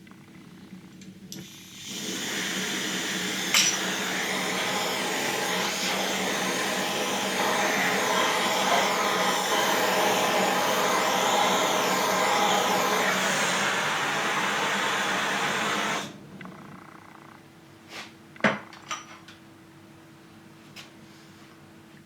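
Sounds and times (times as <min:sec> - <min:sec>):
machine motor whirring: 0:01.6 - 0:17.1.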